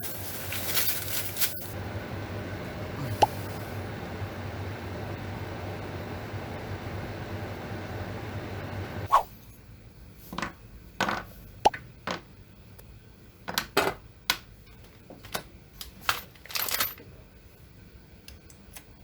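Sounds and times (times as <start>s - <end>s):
metal tools clinking on surface: 16.0s - 17.0s.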